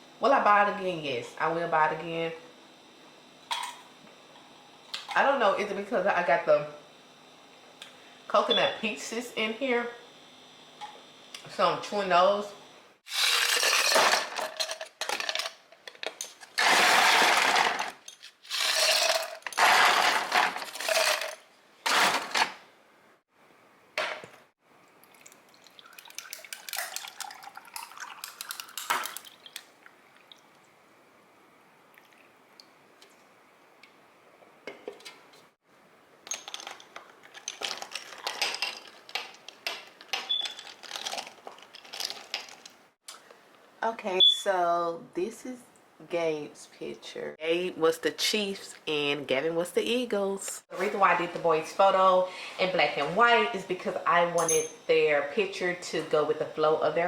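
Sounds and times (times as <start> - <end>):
household objects clinking: 36.3 - 42.7.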